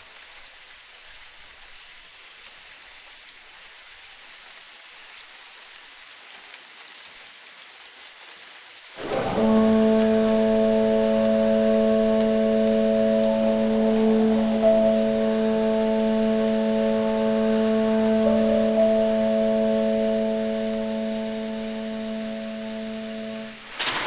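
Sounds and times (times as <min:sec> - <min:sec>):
soft steady hiss: 0:00.0 - 0:24.0
held chord of steady tones: 0:09.0 - 0:23.9.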